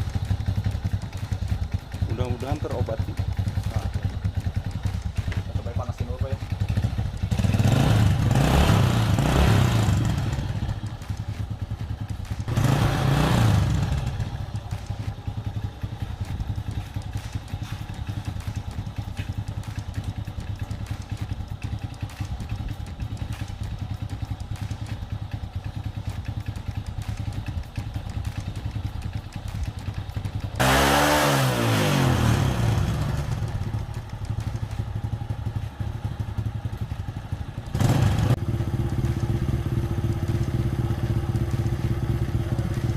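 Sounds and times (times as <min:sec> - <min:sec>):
motorcycle engine idling and revving: 0:00.0 - 0:42.9.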